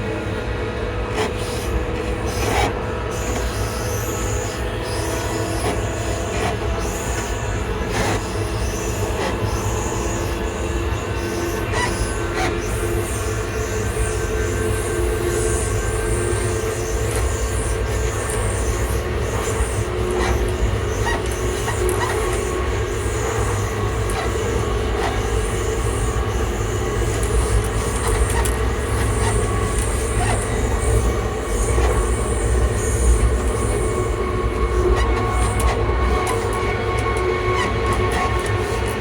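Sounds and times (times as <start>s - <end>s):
train traction motor whine: 0.0s - 39.0s.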